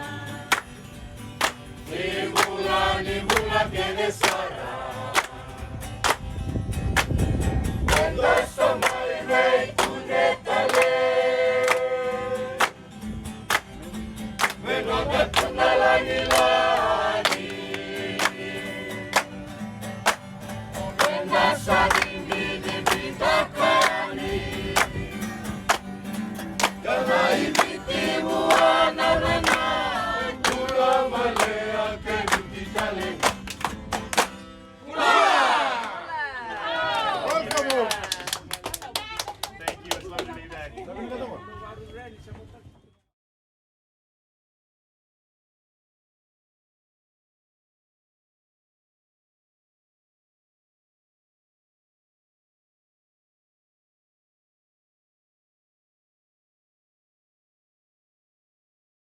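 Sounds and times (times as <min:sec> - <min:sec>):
choir singing: 0:00.0 - 0:00.6, 0:01.8 - 0:05.8, 0:07.9 - 0:12.8, 0:14.6 - 0:19.3, 0:20.8 - 0:25.4, 0:26.7 - 0:33.5, 0:34.8 - 0:36.0.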